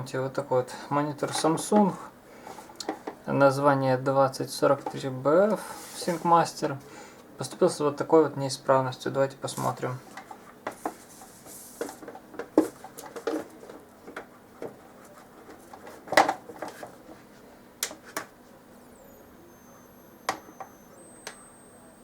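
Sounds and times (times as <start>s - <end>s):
high-pitched monitor whistle: 18.9s - 22.0s.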